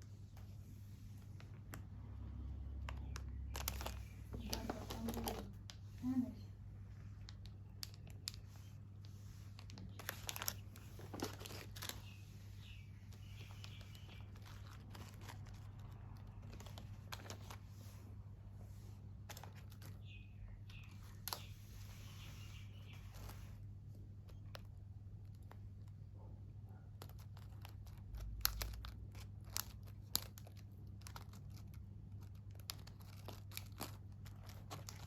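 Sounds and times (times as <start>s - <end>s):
plastic packaging crinkling: 3.1s - 5.6s, 9.5s - 17.6s.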